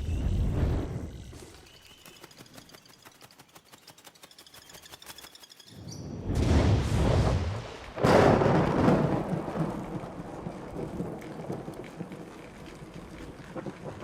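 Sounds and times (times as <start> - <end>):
thunderclap rumbling: 6.2 - 14.0.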